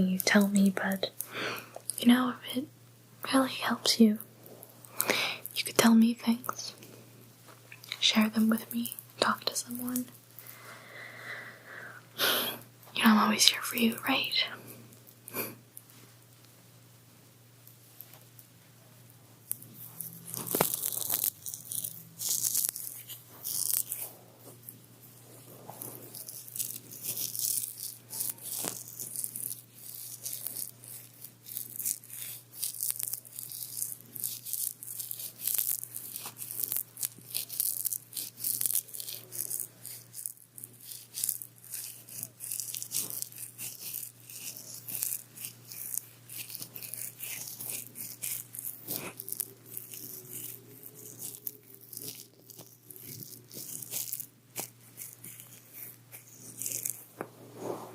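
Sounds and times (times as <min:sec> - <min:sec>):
crisp rattling and crackling: 0:19.4 - 0:57.1.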